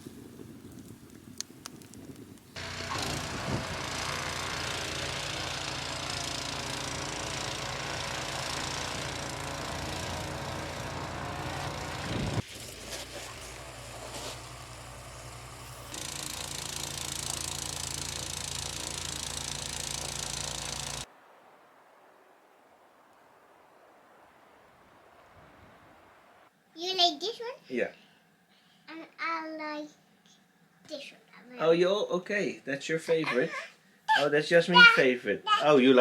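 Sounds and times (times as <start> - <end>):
snowblower engine running: 2.6 - 21.1.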